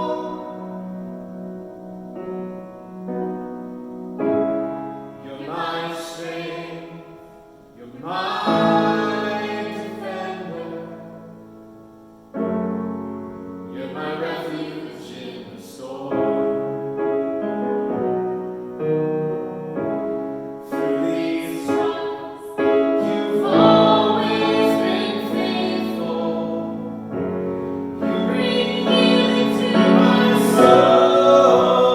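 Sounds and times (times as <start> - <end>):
piano playing slow chords: 0.0 - 31.9
person singing long notes: 28.0 - 31.9.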